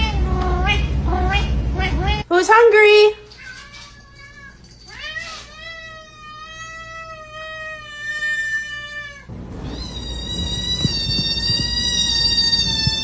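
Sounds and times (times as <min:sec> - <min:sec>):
cat meowing: 0:03.4 - 0:13.0
low rumble with high tones: 0:09.3 - 0:13.0.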